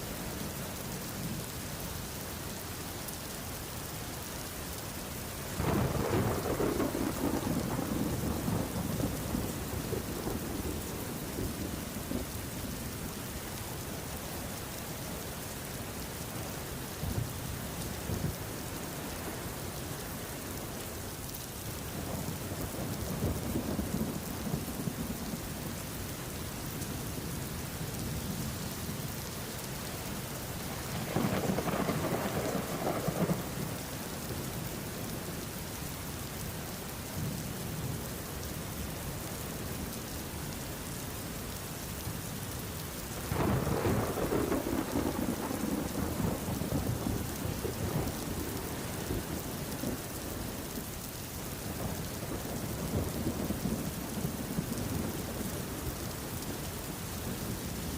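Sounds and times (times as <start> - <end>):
heavy rain falling: 0.0 - 57.9
thunder rolling: 5.6 - 10.9, 30.9 - 33.5.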